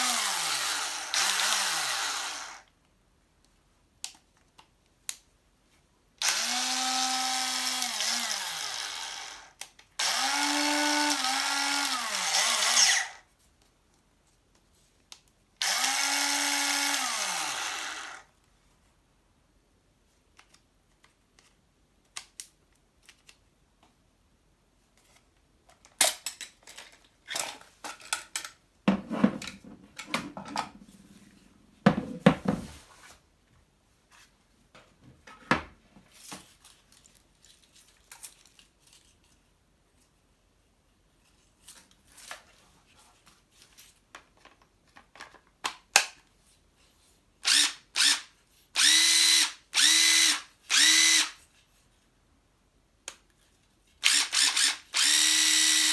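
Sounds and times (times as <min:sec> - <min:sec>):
cordless drill motor whirring: 0:00.0 - 0:02.6, 0:06.2 - 0:13.2, 0:15.6 - 0:18.2, 0:47.4 - 0:51.4, 0:54.0 - 0:55.9
power tools being handled: 0:15.6 - 0:18.2, 0:26.6 - 0:32.9.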